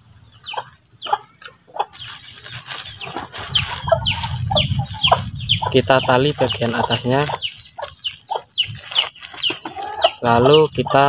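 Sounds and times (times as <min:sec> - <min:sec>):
chickens chirping: 0:00.0 - 0:11.0
low rumble: 0:02.0 - 0:09.3.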